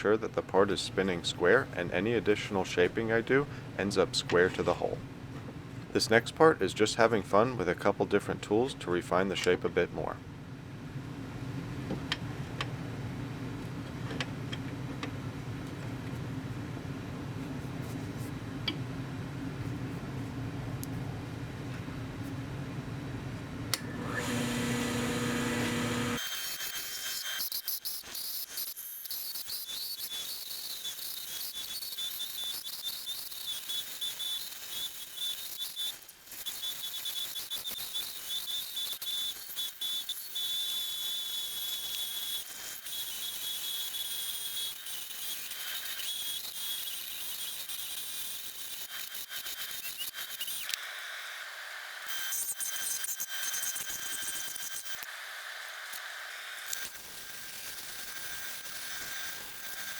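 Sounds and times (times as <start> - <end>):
tool scraping spinning wood: 23.8 - 27.4
wood lathe hiss with whistle tone: 24.0 - 59.9.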